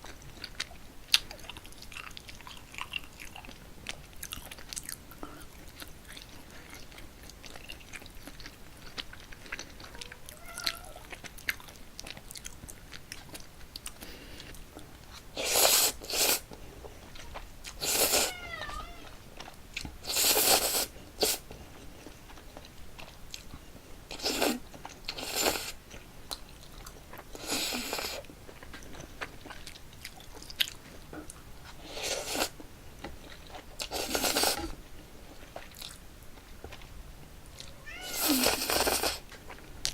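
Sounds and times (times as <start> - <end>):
chewing and mouth clicks: 0.0 - 39.9
person slurping noodles: 15.4 - 16.4, 17.8 - 18.3, 20.0 - 21.4, 24.1 - 24.6, 25.2 - 25.8, 27.4 - 28.2, 31.8 - 32.5, 33.9 - 34.7, 38.1 - 39.2.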